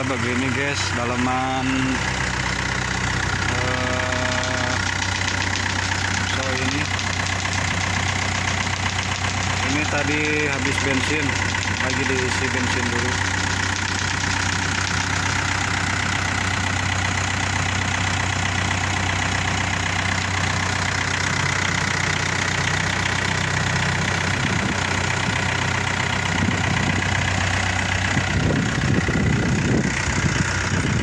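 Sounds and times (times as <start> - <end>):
engine idling: 0.0 - 31.0
rough low rumble: 23.9 - 31.0.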